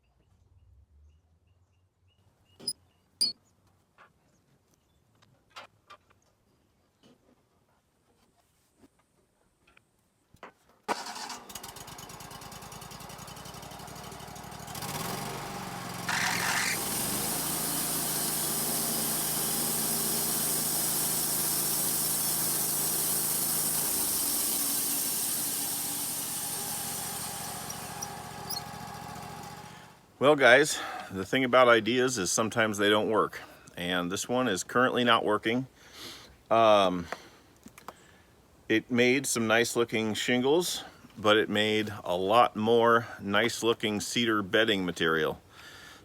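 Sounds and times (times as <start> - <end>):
sawmill engine running: 10.9 - 30.2.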